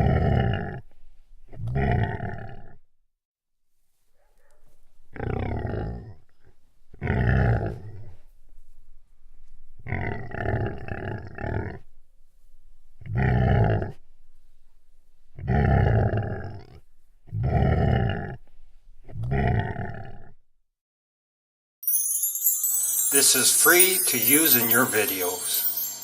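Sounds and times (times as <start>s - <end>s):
animal growling: 0.0s - 2.9s, 5.1s - 8.3s, 9.8s - 12.0s, 12.9s - 20.4s.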